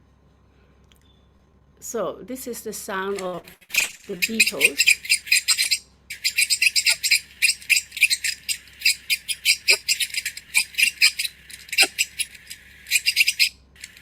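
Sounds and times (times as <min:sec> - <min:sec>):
beetle pulsed chirping: 0:03.8 - 0:14.0.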